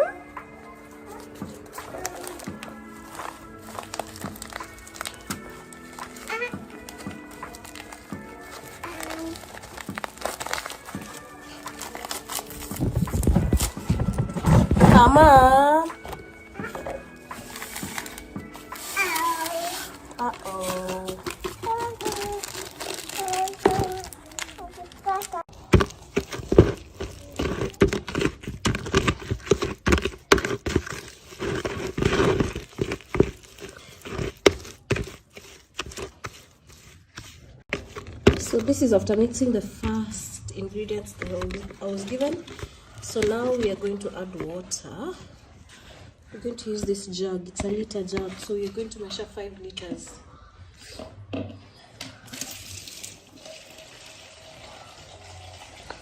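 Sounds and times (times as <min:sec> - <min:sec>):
stick knocking in plastic bucket: 0:25.7 - 0:33.4
water pouring into container: 0:52.3 - 0:56.0.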